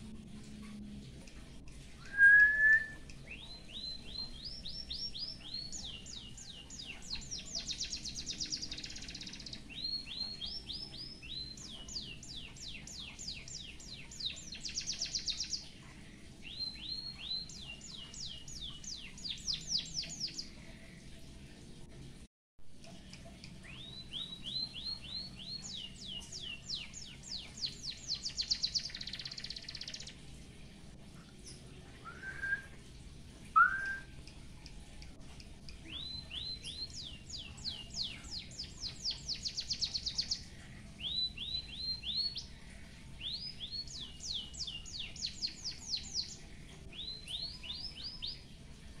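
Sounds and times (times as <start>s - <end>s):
bird singing high trills: 2.0s - 6.3s, 32.0s - 32.8s, 33.6s - 34.1s
low short bird notes: 33.6s - 34.1s.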